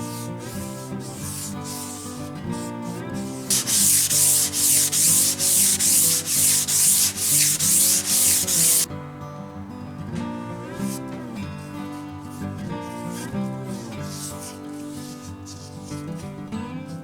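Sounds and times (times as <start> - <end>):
sandpaper sanding wood: 0.0 - 8.9, 11.6 - 16.2.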